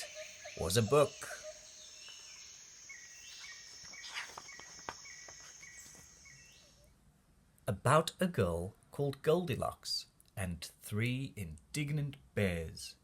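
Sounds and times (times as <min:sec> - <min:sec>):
crickets chirping: 0:00.0 - 0:06.8.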